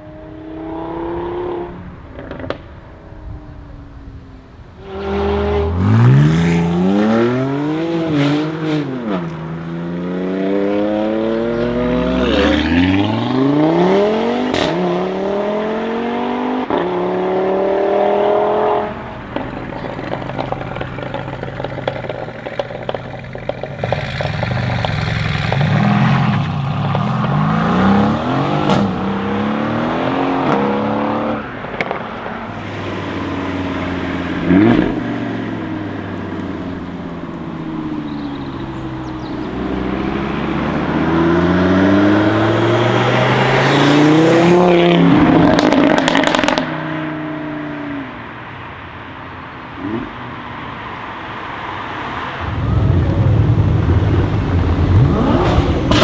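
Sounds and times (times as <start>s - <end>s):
exhaust pops and crackles: 0.0s - 8.3s, 18.7s - 29.2s, 29.9s - 46.8s, 52.1s - 56.0s
car engine revving: 0.0s - 48.6s, 49.7s - 56.0s.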